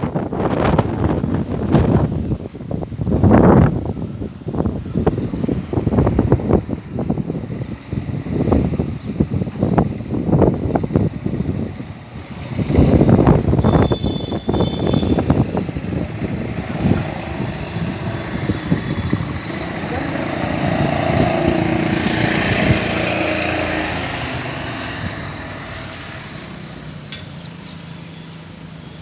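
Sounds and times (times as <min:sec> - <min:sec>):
wind buffeting microphone: 0:00.0 - 0:27.6
engine-like drone: 0:15.0 - 0:29.0
sharp click: 0:27.1 - 0:27.6.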